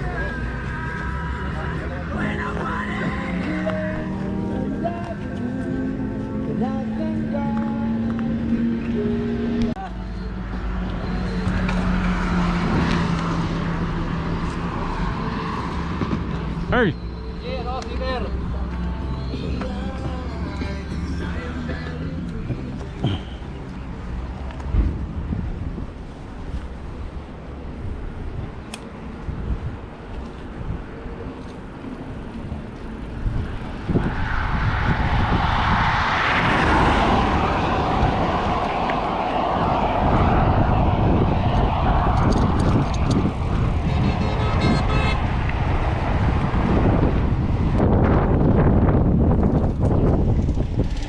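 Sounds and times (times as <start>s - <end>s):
wind buffeting microphone: 24.7s - 51.0s
vehicle engine passing by: 33.4s - 49.4s.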